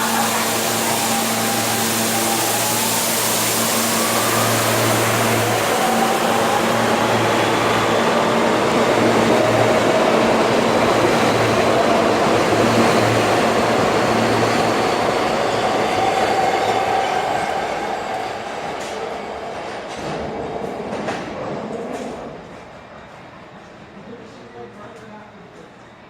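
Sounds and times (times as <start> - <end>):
air compressor hum: 0.0 - 7.6
subway train pulling out: 0.0 - 26.0.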